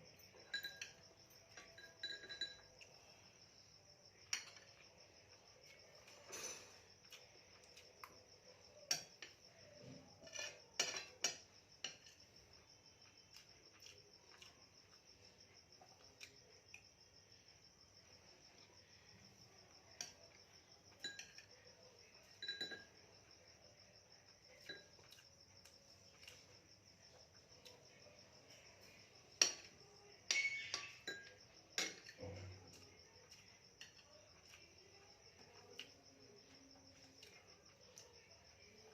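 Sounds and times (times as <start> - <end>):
crickets trilling: 0.0 - 38.9
cutlery clinking on dishes: 0.2 - 3.0, 4.2 - 4.9, 6.0 - 7.3, 8.8 - 12.3, 20.0 - 21.6, 22.2 - 23.1, 24.6 - 25.2, 28.5 - 34.6.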